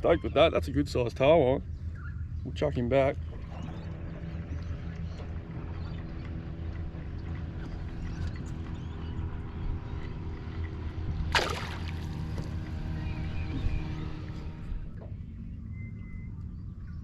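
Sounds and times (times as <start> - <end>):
boat motor humming: 0.0 - 17.0
water splash: 11.3 - 12.6.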